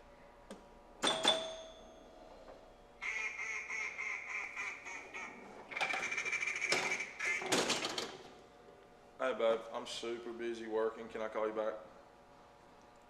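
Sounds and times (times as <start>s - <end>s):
rapid nasal quacking tone: 3.0s - 7.5s.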